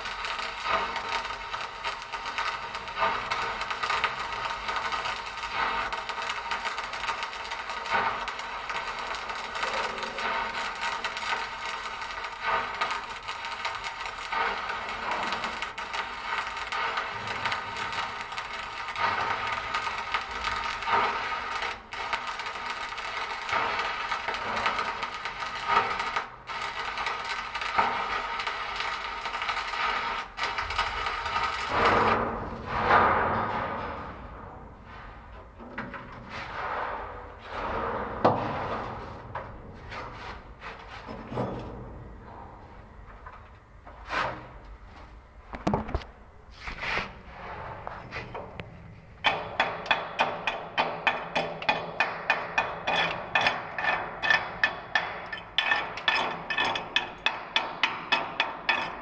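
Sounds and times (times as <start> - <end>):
welding arc crackling: 0.0 - 32.5
short knocks and scrapes: 31.7 - 49.2.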